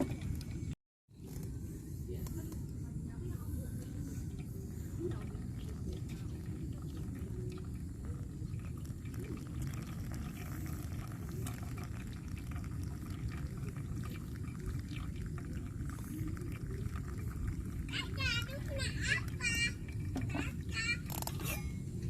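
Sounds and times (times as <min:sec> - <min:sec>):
liquid pouring in a stream: 0:05.0 - 0:21.2.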